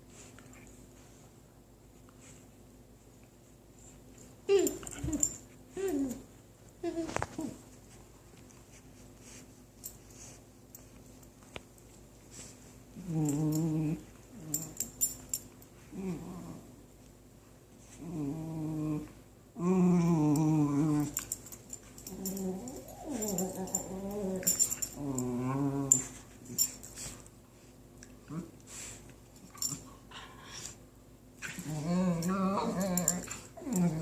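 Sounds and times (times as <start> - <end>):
dogs growling while playing: 13.0 - 15.1, 15.8 - 16.8, 17.9 - 26.8, 31.4 - 34.0.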